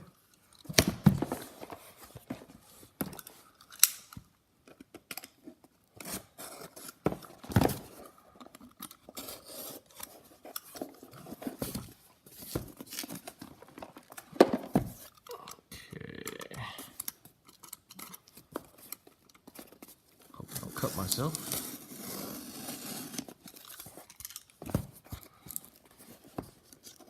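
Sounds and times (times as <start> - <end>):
packing tape tearing: 4.9 - 14.2, 16.9 - 27.0
cardboard box being cut: 20.7 - 23.7.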